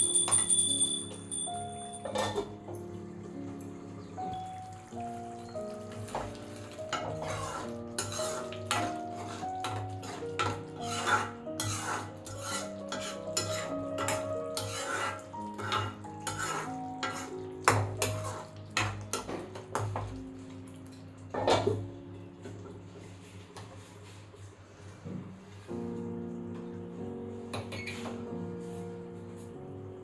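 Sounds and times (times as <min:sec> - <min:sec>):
background music: 0:00.0 - 0:23.3
metal utensils scraping cookware: 0:01.9 - 0:02.5, 0:06.9 - 0:19.2.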